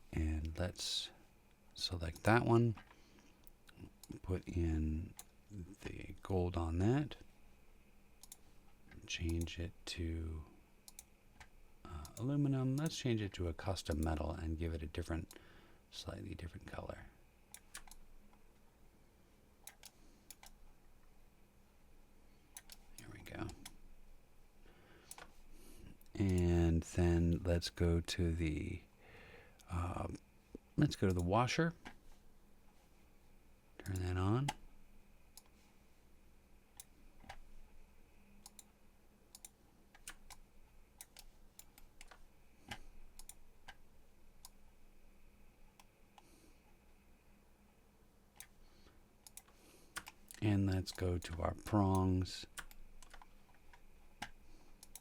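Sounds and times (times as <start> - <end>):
faint steady hum: 0.0 - 55.0
computer mouse clicking: 8.2 - 9.5, 10.9 - 12.9, 17.5 - 18.0, 19.6 - 20.6, 22.5 - 23.8, 25.1 - 25.4, 38.4 - 38.7, 39.3 - 40.4, 41.0 - 43.8, 48.4 - 48.6, 49.2 - 55.0
mouse and keyboard clicking: 49.2 - 51.8.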